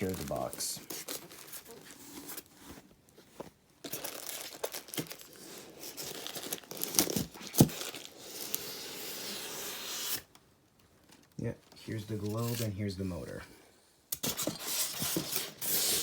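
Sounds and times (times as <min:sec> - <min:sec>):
packaging rustling: 0:00.0 - 0:08.6.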